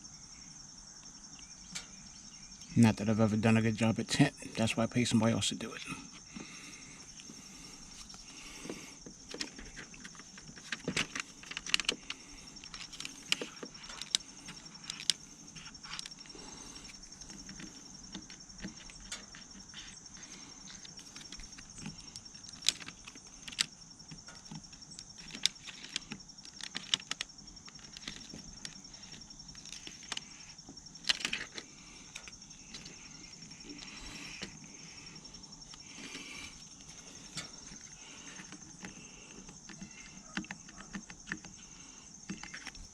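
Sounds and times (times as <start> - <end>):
steady high-pitched hum: 0.0 - 42.9.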